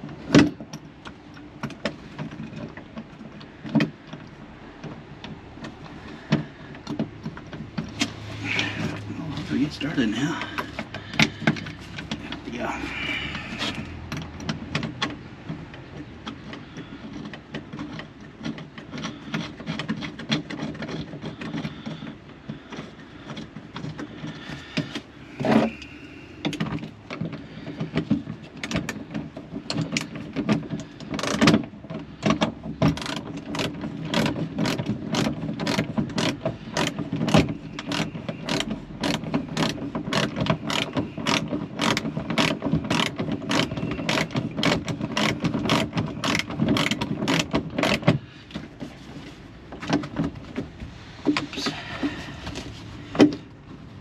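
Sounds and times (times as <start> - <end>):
hand ratchet clicking: 5.2 - 48.2.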